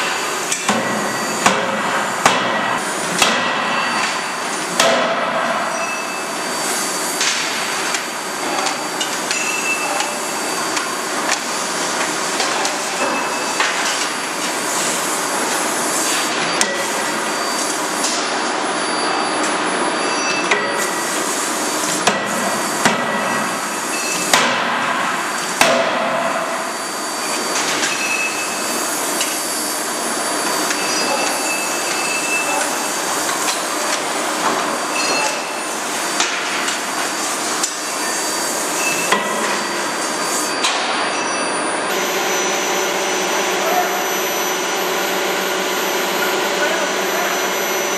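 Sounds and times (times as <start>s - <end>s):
forging hammer machine noise: 0.0s - 47.9s.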